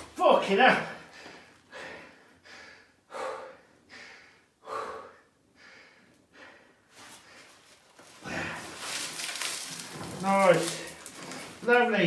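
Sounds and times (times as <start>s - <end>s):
man breathing hard: 1.0s - 7.6s.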